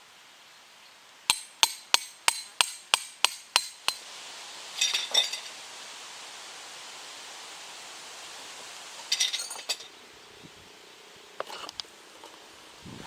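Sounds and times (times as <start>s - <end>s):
hammer striking metal: 1.3s - 4.0s.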